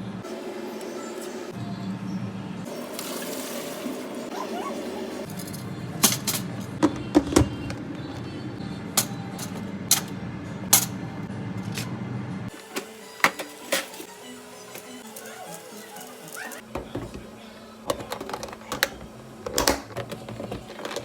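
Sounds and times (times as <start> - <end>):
kitchenware clinking and knocking: 5.3 - 7.8.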